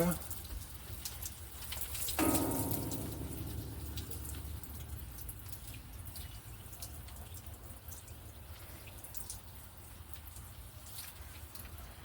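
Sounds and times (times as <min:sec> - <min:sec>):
water dripping off window: 0:00.0 - 0:12.0
faint low rumble: 0:02.2 - 0:07.4.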